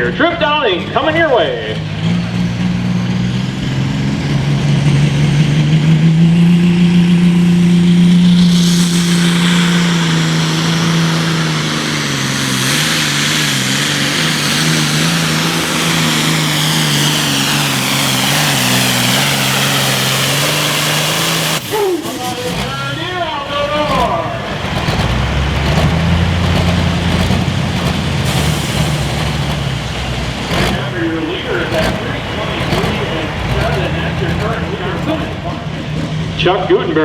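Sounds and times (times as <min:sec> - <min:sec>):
tractor diesel engine full throttle: 0:00.0 - 0:37.0
broad hiss: 0:07.2 - 0:24.2.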